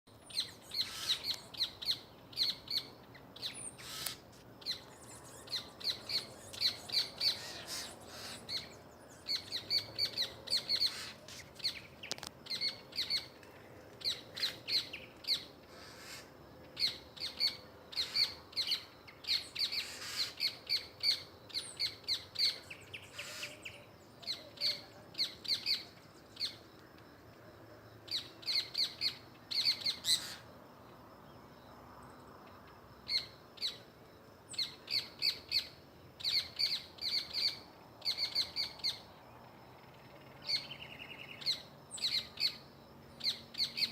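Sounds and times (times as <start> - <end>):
small birds alarm calls: 0.3 - 13.4, 14.0 - 21.2, 21.8 - 24.8, 28.1 - 30.4.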